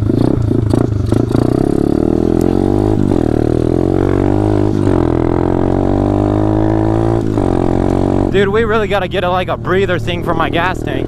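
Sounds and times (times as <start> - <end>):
motorbike engine under throttle: 0.0 - 8.6.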